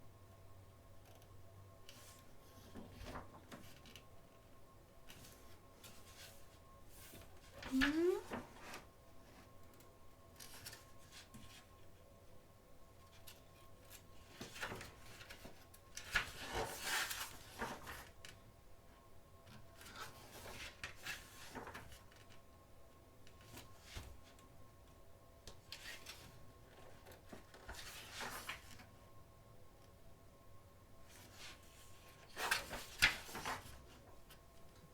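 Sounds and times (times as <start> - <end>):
magazine pages turning: 27.0 - 28.8, 31.1 - 33.8.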